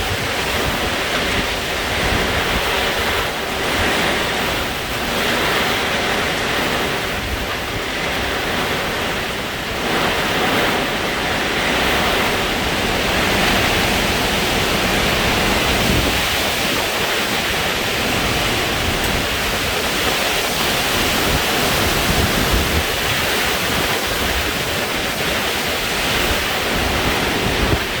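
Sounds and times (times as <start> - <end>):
heavy rain rushing: 0.0 - 28.0
hurricane wind: 0.0 - 28.0
wind buffeting the microphone: 0.0 - 28.0.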